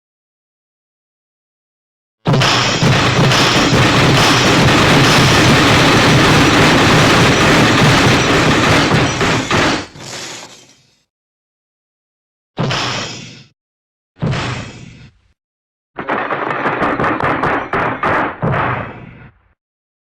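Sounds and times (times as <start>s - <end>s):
loud crashing and rumbling: 2.3s - 10.0s.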